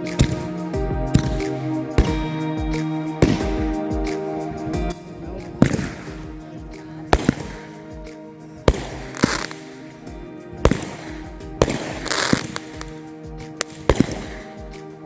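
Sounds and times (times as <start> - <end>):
fireworks bangs: 0.0 - 2.4, 5.5 - 9.9, 10.6 - 14.8
background music: 0.0 - 15.0
firework hissing: 0.0 - 15.0.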